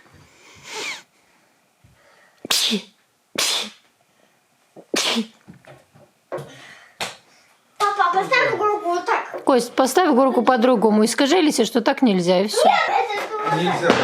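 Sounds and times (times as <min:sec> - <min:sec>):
person sneezing: 0:02.4 - 0:03.9, 0:04.8 - 0:05.4.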